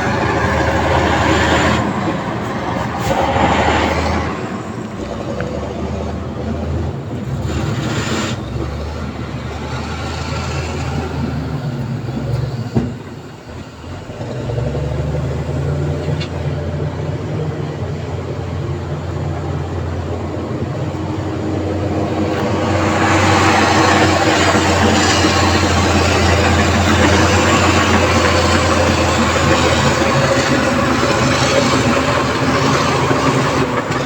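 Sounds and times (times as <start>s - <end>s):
broad rushing noise: 0.0s - 5.2s, 19.4s - 34.0s
diesel engine running: 0.0s - 34.0s.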